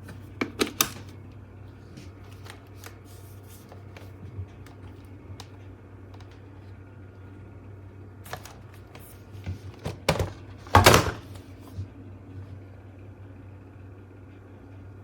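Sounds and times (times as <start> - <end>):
low steady hum: 0.0 - 15.0
stick vacuum knocks and clunks: 9.8 - 11.3.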